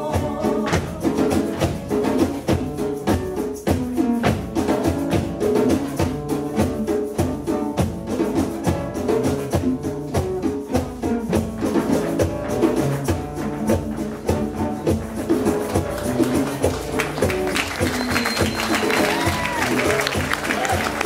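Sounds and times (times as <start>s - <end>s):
percussion beat: 0.0s - 21.0s.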